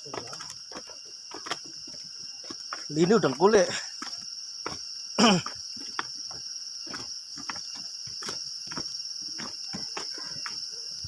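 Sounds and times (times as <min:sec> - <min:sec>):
insects droning: 0:00.0 - 0:11.0.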